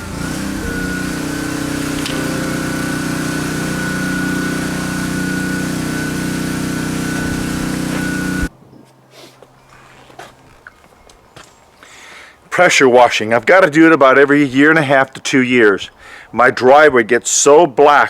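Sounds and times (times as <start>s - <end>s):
pressure washer motor whining: 0.0s - 8.5s
water spray hissing: 0.0s - 8.5s.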